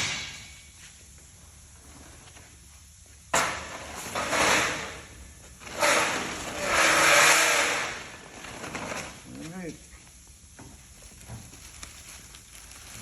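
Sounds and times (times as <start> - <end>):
rasping scraping noise: 5.6 - 9.1.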